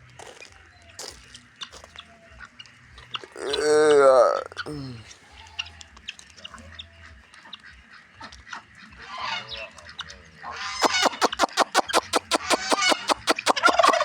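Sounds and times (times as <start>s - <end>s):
turkey gobbling: 3.0s - 14.0s.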